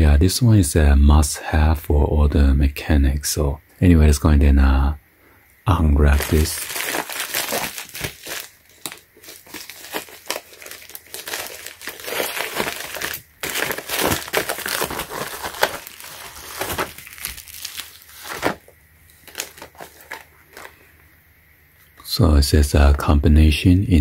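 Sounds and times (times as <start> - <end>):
packaging crinkling and tearing: 6.1 - 20.8.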